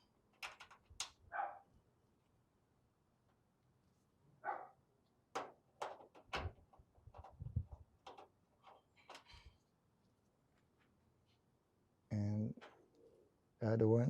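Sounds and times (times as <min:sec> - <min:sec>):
small metal clicks and knocks: 0:00.0 - 0:01.2, 0:05.3 - 0:09.6.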